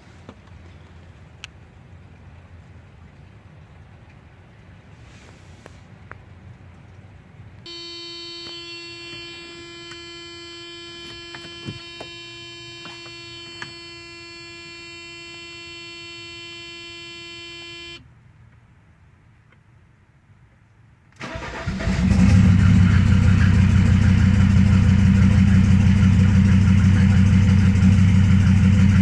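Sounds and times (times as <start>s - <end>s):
car warning buzzer tone: 7.6s - 18.0s, 21.2s - 29.0s.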